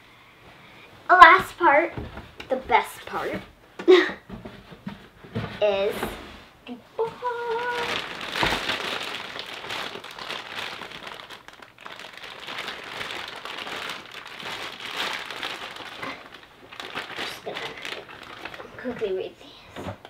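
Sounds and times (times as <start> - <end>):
plastic packaging crinkling: 7.0 - 19.3.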